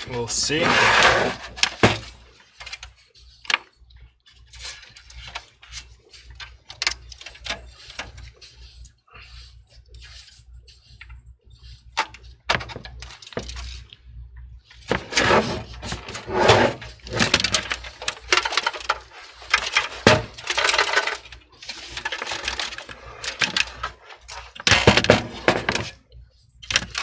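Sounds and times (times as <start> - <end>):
dense clattering and rattling: 0.0 - 2.8, 12.5 - 13.8, 14.8 - 26.0.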